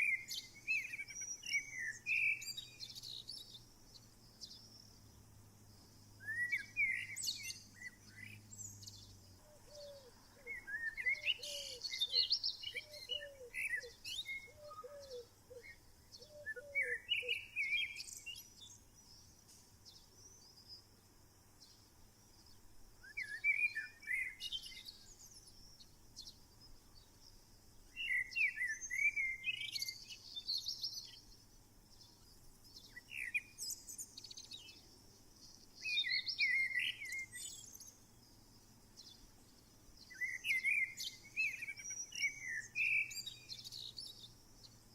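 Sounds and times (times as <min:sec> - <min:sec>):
songbirds chirping: 0:00.0 - 0:44.9.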